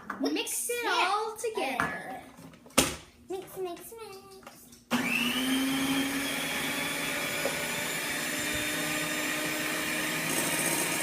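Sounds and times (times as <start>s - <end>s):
electric kitchen mixer running: 4.9s - 11.0s.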